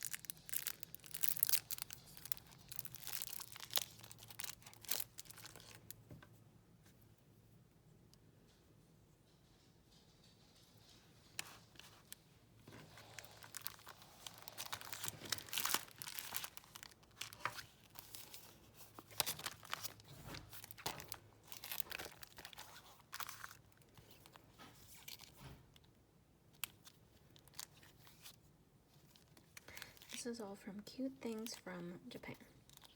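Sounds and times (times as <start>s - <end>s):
packaging tearing and crinkling: 0.0s - 5.9s, 12.7s - 24.2s.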